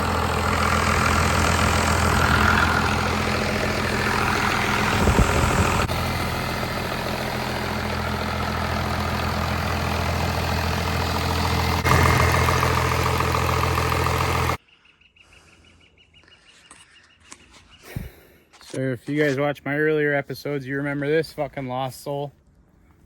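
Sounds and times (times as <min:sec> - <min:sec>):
engine idling: 0:00.0 - 0:14.6.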